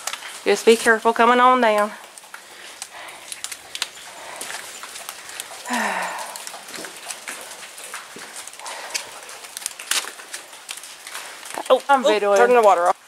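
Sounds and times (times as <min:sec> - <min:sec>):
person grunting: 0:05.7 - 0:06.4.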